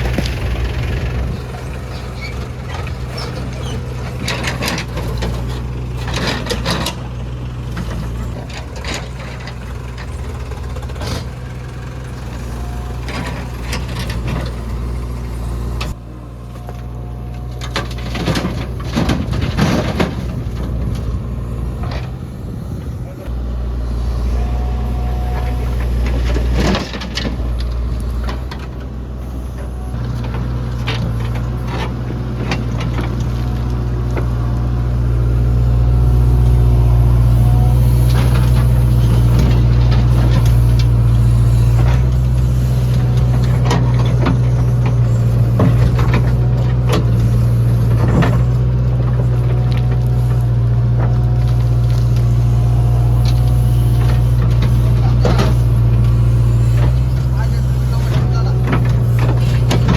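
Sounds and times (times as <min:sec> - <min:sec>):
diesel engine running: 0:00.0 - 0:59.9
knocks and clanks: 0:17.4 - 0:23.3, 0:52.9 - 0:59.9.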